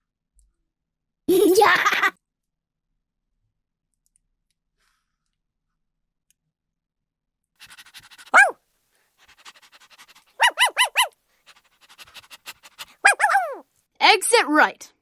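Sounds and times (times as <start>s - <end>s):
toy speaker dog barking: 1.3s - 2.1s, 7.6s - 8.5s, 9.3s - 13.6s.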